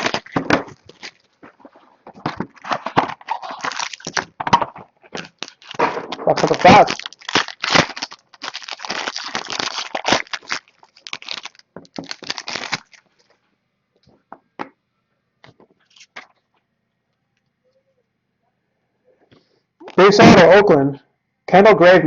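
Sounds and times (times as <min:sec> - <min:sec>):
plastic shrink wrap crinkling: 0:00.0 - 0:13.3, 0:15.8 - 0:16.4.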